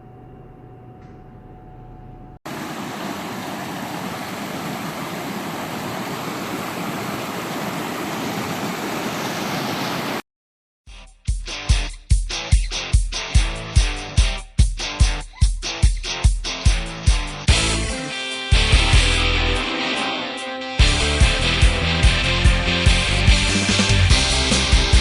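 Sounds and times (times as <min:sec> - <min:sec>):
waterfall rushing: 0:02.5 - 0:10.2
strummed guitar music: 0:11.0 - 0:25.0.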